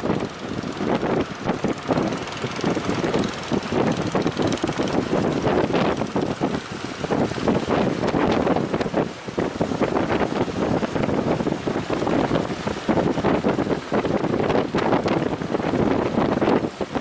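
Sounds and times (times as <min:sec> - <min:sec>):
wind buffeting microphone: 0:00.0 - 0:17.0.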